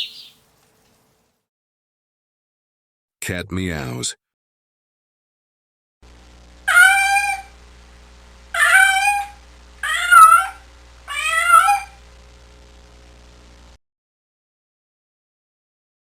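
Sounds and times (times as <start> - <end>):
faint steady hum: 6.0 - 13.8
cat meowing: 6.7 - 7.5, 8.5 - 12.0.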